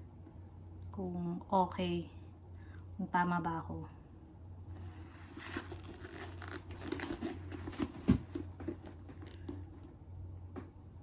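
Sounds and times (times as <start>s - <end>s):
handbag rustling and crinkling: 4.8s - 9.4s.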